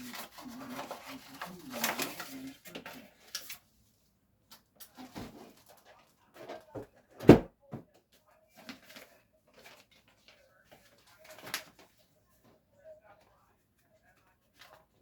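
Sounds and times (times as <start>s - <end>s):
knocks and clunks of handling: 6.4s - 8.0s.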